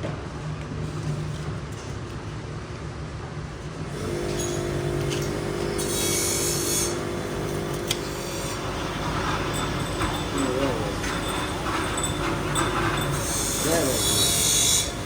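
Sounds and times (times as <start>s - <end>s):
power tool humming: 3.9s - 15.0s.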